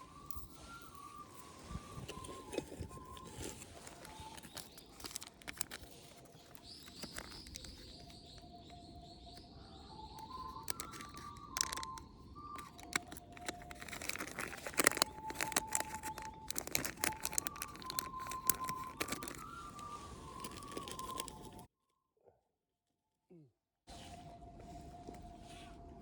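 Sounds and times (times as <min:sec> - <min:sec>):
recorder melody: 0:06.6 - 0:21.7.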